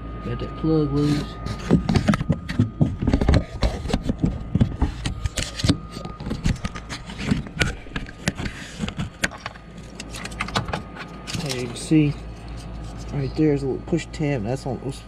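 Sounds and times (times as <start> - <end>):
plastic parts clicking and scraping: 1.7 - 11.8.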